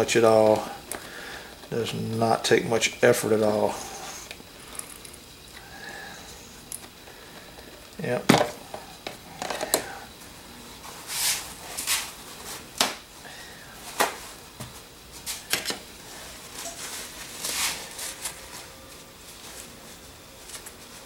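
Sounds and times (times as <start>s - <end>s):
paper towel wiping rustles: 10.7s - 12.8s, 13.8s - 21.0s.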